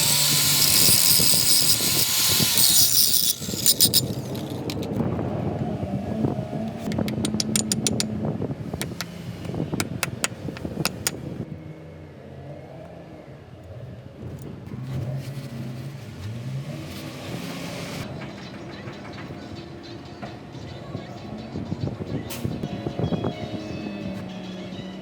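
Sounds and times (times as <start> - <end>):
metallic clinks and taps: 7.0 - 8.1.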